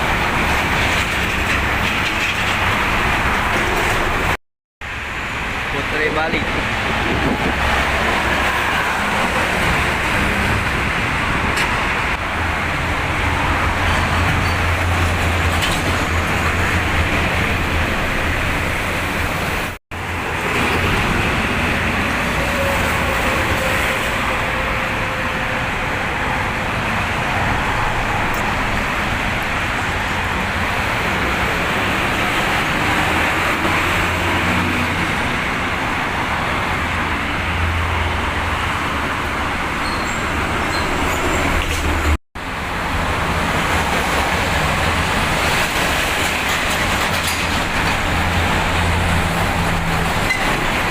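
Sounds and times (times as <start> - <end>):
fast highway traffic: 0.0 - 50.9.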